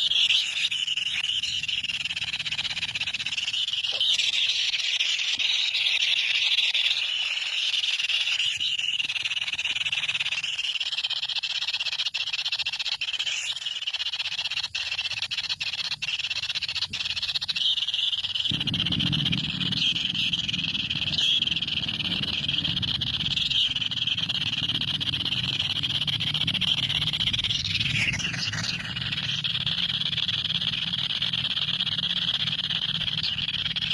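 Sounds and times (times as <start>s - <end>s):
chorus of high calling animals: 0.0s - 33.9s
low hum: 18.4s - 33.9s.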